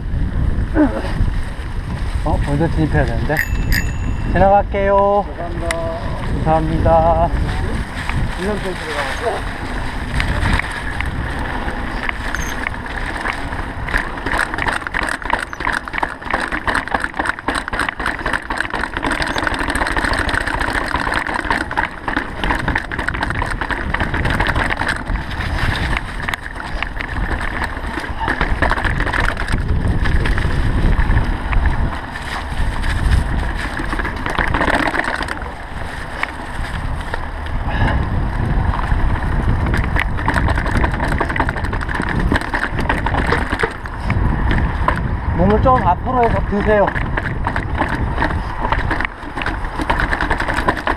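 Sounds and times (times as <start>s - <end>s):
bike rattling over bumps: 0.0s - 50.9s
tyres rumbling over dirt: 0.0s - 50.9s
wind rush on microphone: 0.0s - 50.9s.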